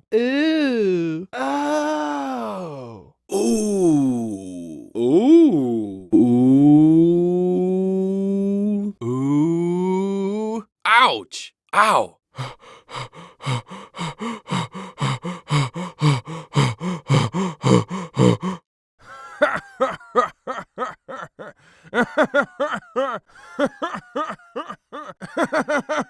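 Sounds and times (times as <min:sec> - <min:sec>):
higher voice grunting and panting: 0:01.4 - 0:06.6, 0:10.9 - 0:18.6
low voice rhythmic grunts: 0:02.2 - 0:07.6, 0:08.7 - 0:10.0, 0:10.9 - 0:18.7.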